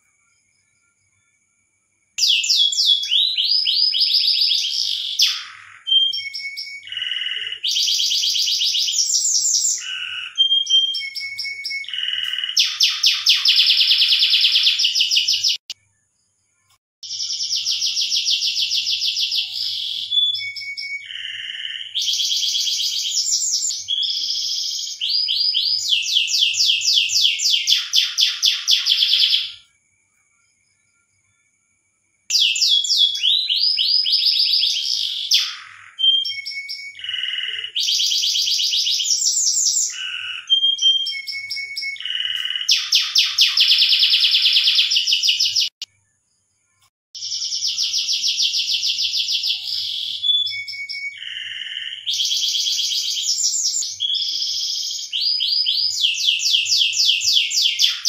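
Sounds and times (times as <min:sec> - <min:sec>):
canary singing trills: 0:02.2 - 0:16.2, 0:17.0 - 0:29.7, 0:32.3 - 0:45.9, 0:47.2 - 0:58.0.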